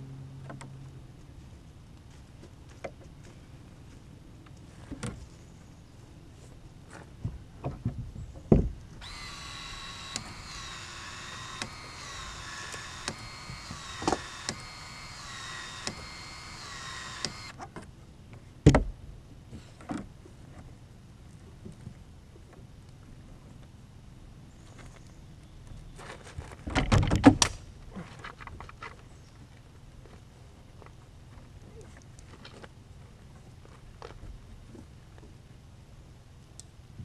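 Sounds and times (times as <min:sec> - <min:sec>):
knocks and clunks of hand work: 0:07.2 - 0:08.8
power tool motor whining: 0:09.0 - 0:17.6.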